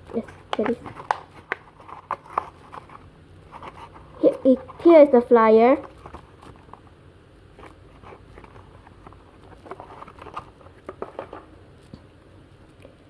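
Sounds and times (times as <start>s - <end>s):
paper flyer rustling: 0.1s - 6.8s.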